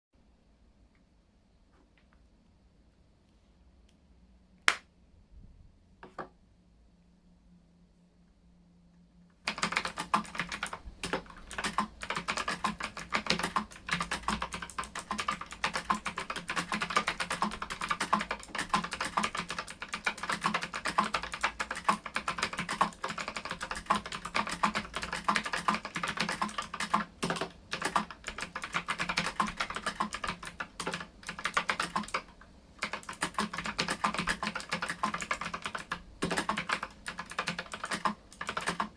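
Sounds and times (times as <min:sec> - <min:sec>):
clicky mechanical keyboard typing: 0:09.4 - 0:38.9.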